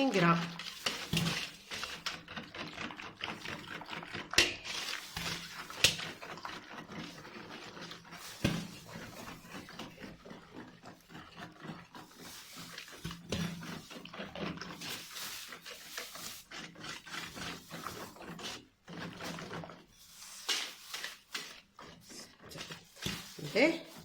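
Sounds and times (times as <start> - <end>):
whisk stirring in a bowl: 0.0 - 24.0.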